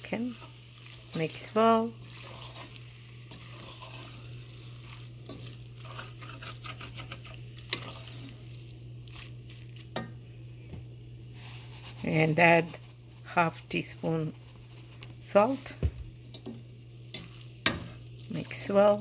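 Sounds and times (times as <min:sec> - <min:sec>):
chicken sizzling in oil: 0:00.0 - 0:10.5, 0:13.8 - 0:19.0.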